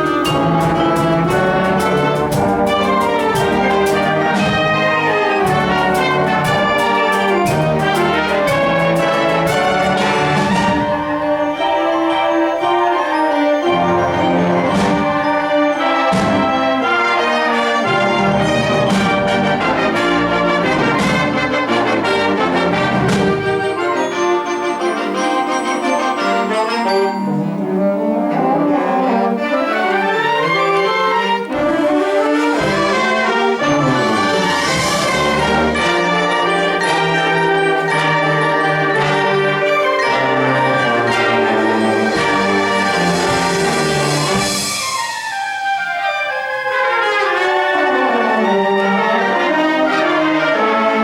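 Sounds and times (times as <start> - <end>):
sharp percussion strikes: 0.0 - 11.5, 13.6 - 24.6
concert band playing: 0.0 - 46.3.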